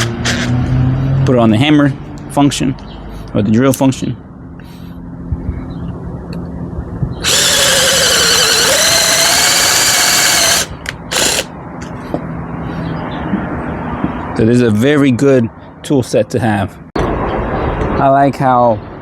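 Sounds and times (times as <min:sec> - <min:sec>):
cordless drill whining: 0:07.2 - 0:11.5.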